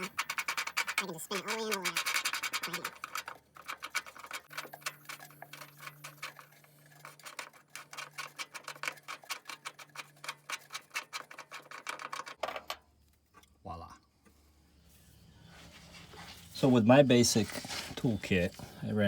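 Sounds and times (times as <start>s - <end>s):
fast metallic clicking: 0.0s - 12.4s.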